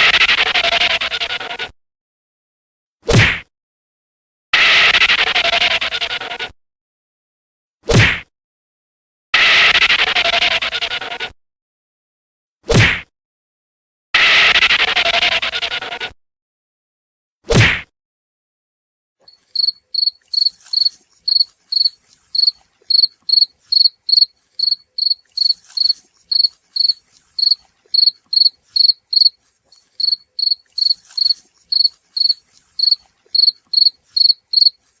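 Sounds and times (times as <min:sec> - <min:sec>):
cricket chirping: 0:19.3 - 0:34.8.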